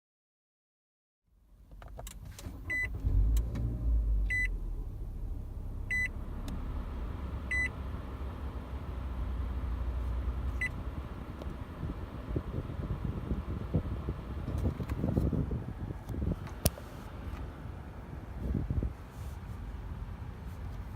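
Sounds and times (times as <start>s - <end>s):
car engine rumble: 1.3s - 20.9s
car warning chime: 4.3s - 4.6s, 5.9s - 6.2s, 7.5s - 7.7s.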